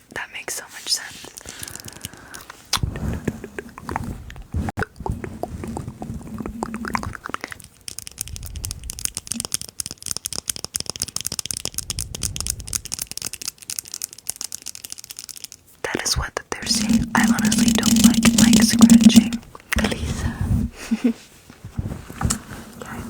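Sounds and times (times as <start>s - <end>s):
stomach growling: 2.8s - 7.7s, 16.6s - 20.8s
fast crackling rustle: 7.6s - 15.7s.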